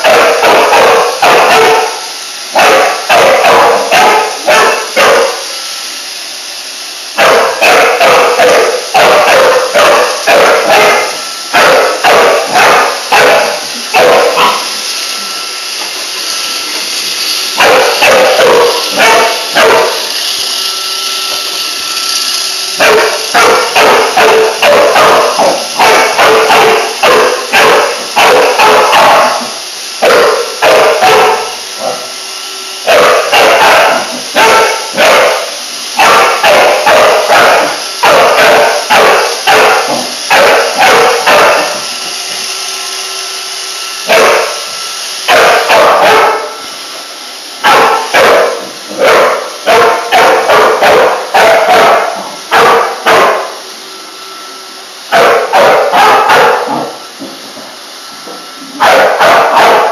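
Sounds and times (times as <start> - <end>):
dog barking loudly: 0.0 - 5.4, 7.2 - 14.7, 17.6 - 20.1, 22.8 - 32.1, 32.8 - 41.9, 44.1 - 44.6, 45.3 - 46.6, 47.6 - 53.6, 55.1 - 57.0, 58.8 - 59.9
robot vacuum humming: 0.0 - 59.9.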